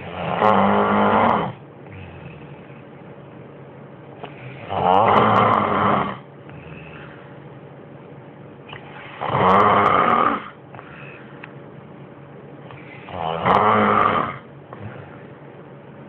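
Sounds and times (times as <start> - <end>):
loud snoring: 0.0 - 2.8, 4.2 - 7.2, 8.7 - 10.6, 12.7 - 15.2.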